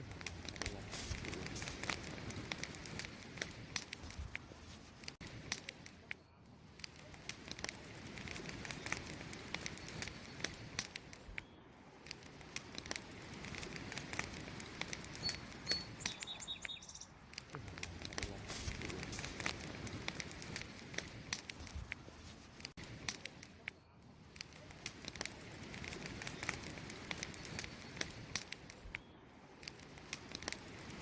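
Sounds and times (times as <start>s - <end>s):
fire hiss: 0.0s - 6.2s, 6.8s - 31.0s
campfire crackling and popping: 0.0s - 31.0s.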